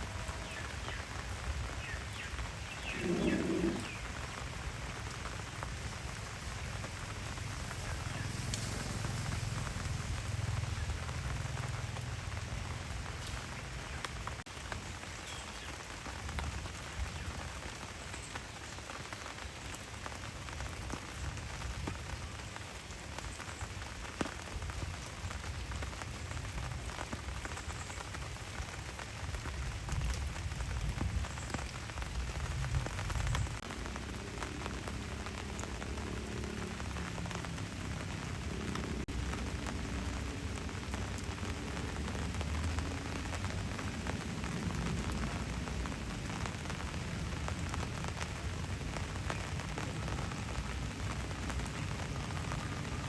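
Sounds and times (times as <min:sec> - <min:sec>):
raindrops ticking: 0:00.0 - 0:53.0
steady rain hiss: 0:00.0 - 0:53.0.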